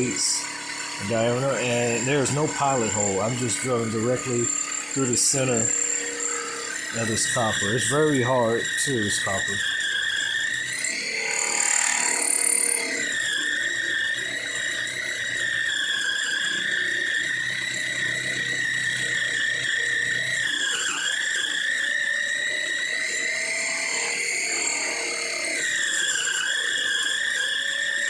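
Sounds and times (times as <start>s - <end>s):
lathe drill squealing on copper: 0.0s - 28.0s.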